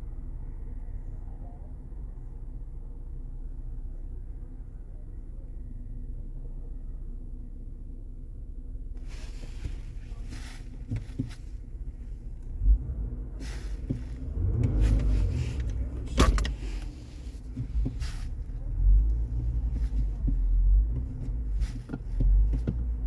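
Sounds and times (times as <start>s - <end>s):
low rumble: 0.0s - 23.0s
rustling: 9.0s - 12.4s, 13.3s - 23.0s.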